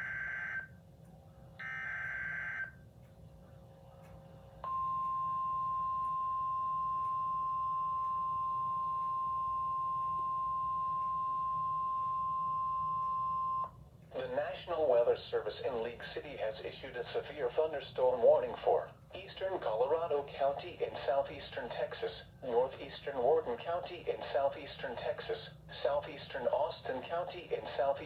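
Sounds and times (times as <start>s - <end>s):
steady warning alarm tone: 0.0s - 0.8s, 1.6s - 3.0s, 4.6s - 13.8s.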